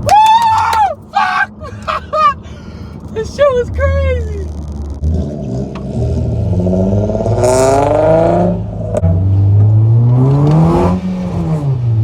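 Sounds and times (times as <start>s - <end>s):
car engine accelerating hard: 3.9s - 12.0s.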